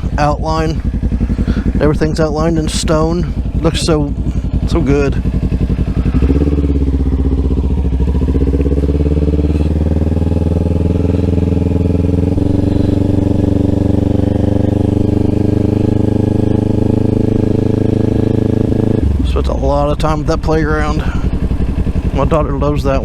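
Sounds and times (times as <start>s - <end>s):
motorcycle engine running: 0.0s - 23.0s.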